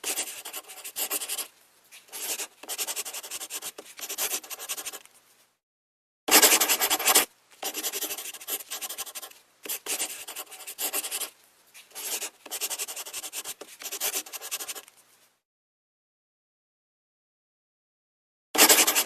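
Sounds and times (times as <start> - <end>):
drawing tool scratching on paper: 0.0 - 1.5, 2.1 - 5.0, 6.3 - 11.3, 11.9 - 14.8, 18.6 - 19.0.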